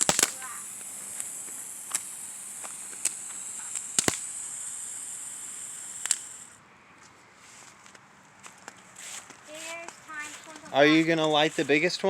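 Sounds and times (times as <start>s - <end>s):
firework crackling pops: 0.0s - 6.6s
firework sparks hissing: 0.0s - 6.6s.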